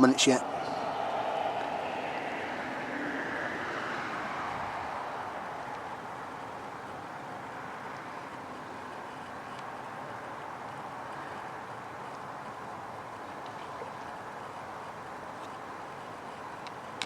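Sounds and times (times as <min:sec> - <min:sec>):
road traffic tyre noise: 0:00.0 - 0:17.0.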